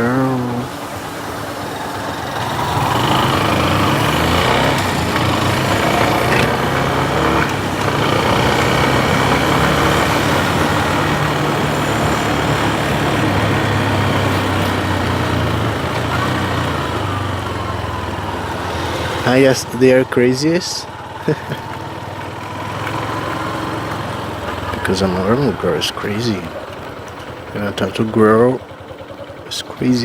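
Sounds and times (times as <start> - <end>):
steady rushing noise: 0.0 - 16.9
motorcycle engine running: 0.0 - 30.0.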